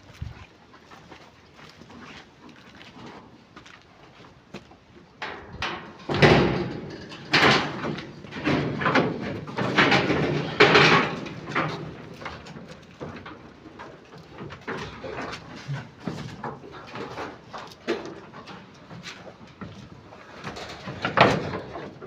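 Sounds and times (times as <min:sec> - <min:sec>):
clattering bangs and knocks: 0:05.2 - 0:22.0.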